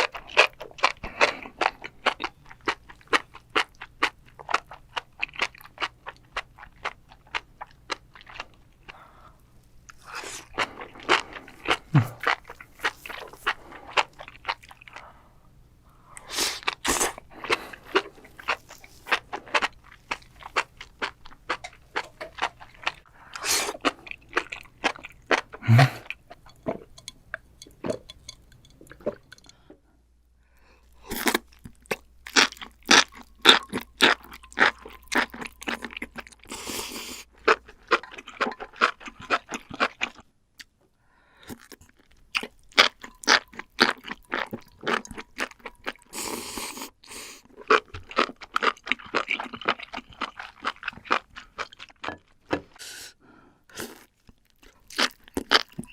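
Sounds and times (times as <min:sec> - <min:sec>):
crunchy chewing: 0:47.4 - 0:52.1.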